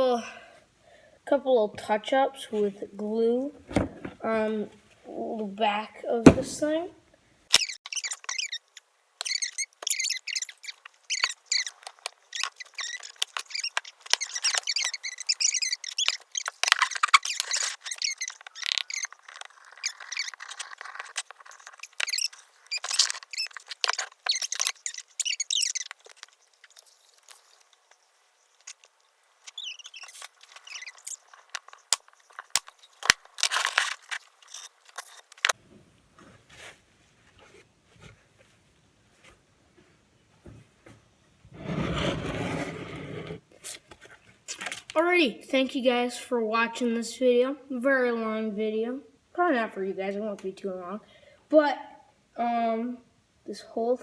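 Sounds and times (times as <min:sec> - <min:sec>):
paper rubbing with squeaks: 0:07.5 - 0:35.6.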